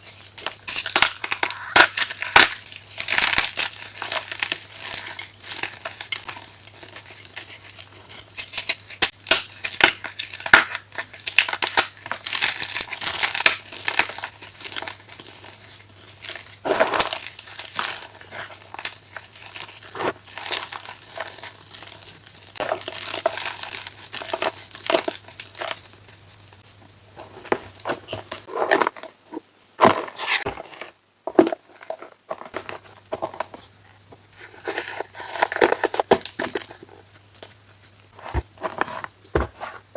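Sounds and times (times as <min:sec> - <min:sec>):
chalk crunching and crackling: 0:00.0 - 0:39.9.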